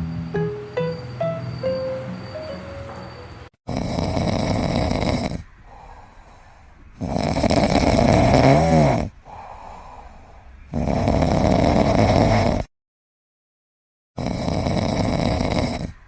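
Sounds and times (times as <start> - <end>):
pet snoring: 3.7 - 6.4, 7.0 - 9.7, 10.7 - 12.7, 14.2 - 16.0
quiet breaths: 3.7 - 12.7, 14.2 - 16.0.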